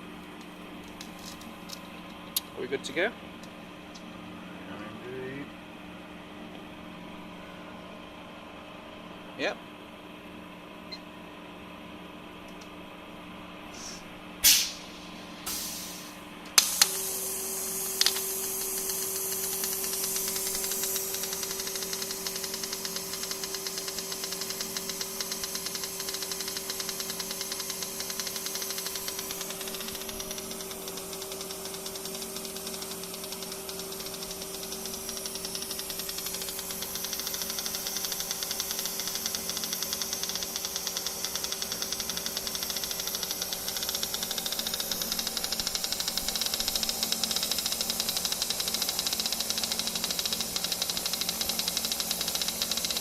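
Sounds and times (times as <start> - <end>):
welding arc striking crack: 14.4 - 14.9.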